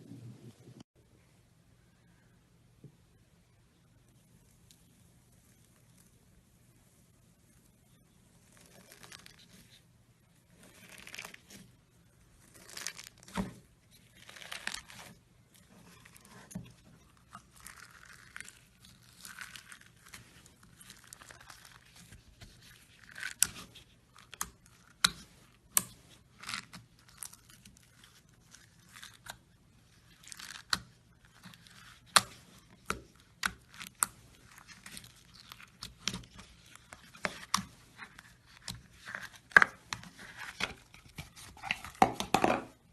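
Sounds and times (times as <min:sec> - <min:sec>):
slime crackling and popping: 0:12.4 - 0:16.5, 0:17.2 - 0:40.0.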